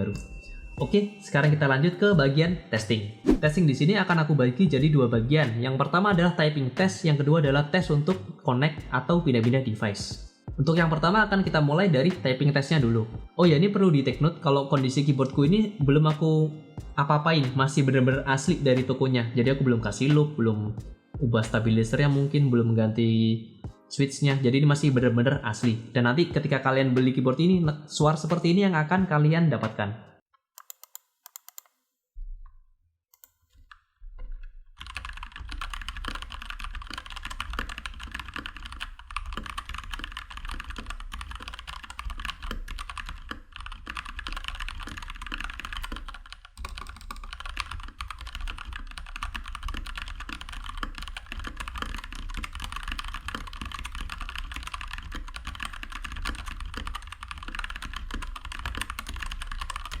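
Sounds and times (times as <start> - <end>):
mechanical keyboard typing: 30.6 - 31.7, 34.8 - 60.0.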